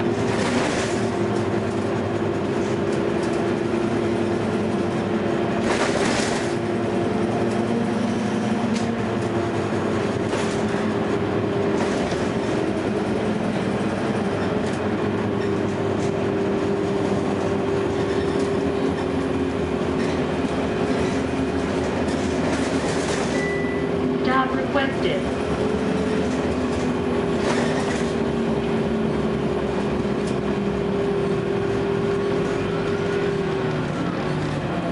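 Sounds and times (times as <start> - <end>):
bus engine humming: 0.0 - 34.9
road noise: 0.0 - 34.9.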